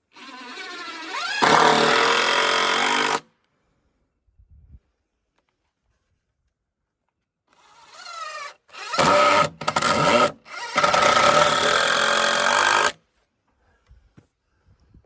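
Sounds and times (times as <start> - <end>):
cordless drill whining: 0.0 - 3.2, 7.5 - 13.0.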